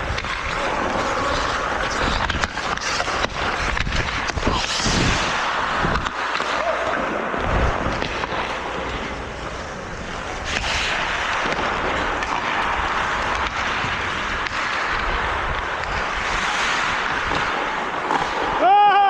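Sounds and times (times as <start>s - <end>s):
wind rushing over microphone: 0.0s - 6.2s, 7.4s - 8.2s
skates scraping ice: 0.0s - 19.0s.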